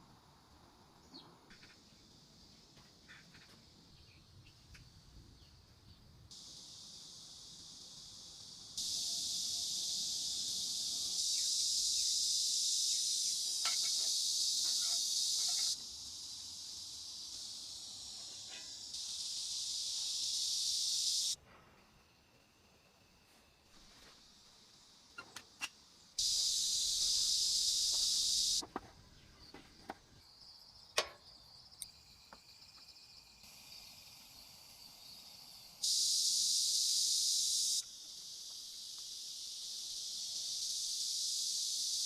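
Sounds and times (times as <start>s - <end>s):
insect chorus shrilling: 6.3s - 21.4s, 24.3s - 28.7s, 30.2s - 42.0s
faint chirps and clicks: 30.4s - 33.0s.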